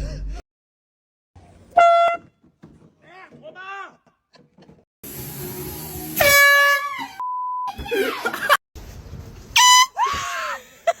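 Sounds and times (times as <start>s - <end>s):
air horn blast: 6.1s - 7.1s, 9.6s - 9.9s
censor bleep: 7.2s - 7.7s.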